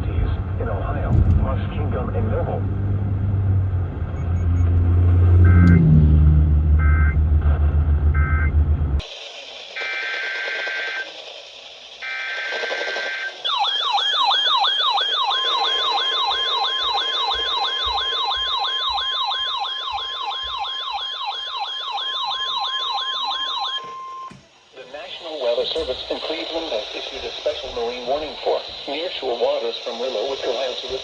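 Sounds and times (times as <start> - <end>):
electronic siren wailing: 4.1 - 8.6, 12.0 - 24.4
steady high alarm tone: 4.2 - 6.0, 9.2 - 24.4.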